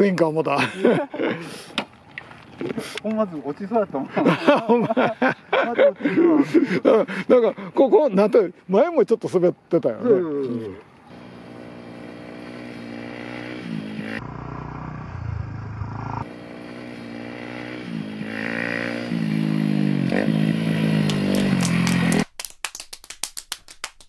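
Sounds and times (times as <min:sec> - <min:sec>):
motorcycle engine revving: 0:11.1 - 0:22.2
sharp claps: 0:21.0 - 0:24.0.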